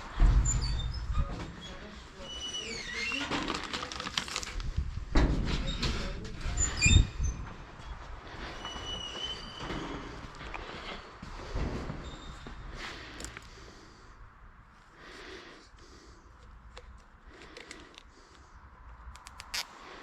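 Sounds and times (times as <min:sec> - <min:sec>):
metal squeaks and scraping: 0:00.2 - 0:03.9, 0:05.3 - 0:12.7.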